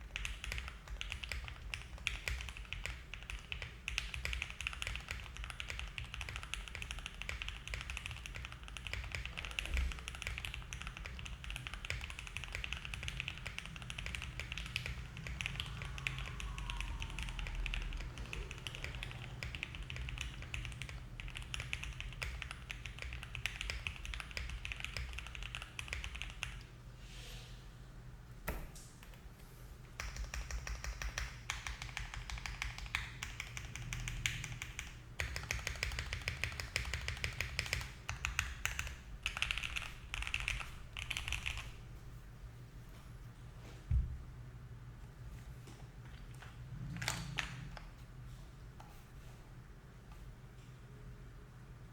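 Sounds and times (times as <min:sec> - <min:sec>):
mechanical keyboard typing: 0:00.0 - 0:26.7, 0:30.0 - 0:41.8, 0:46.9 - 0:47.9.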